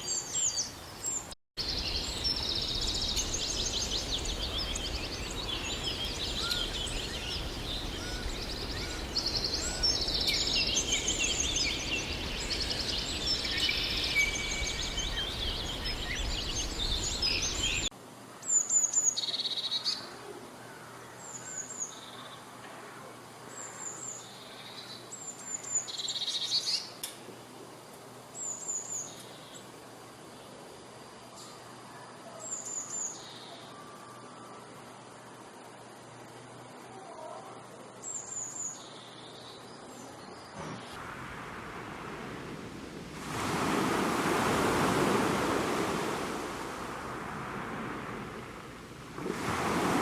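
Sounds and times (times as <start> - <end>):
birds singing and calling: 0.0 - 17.9
background hiss: 0.0 - 50.0.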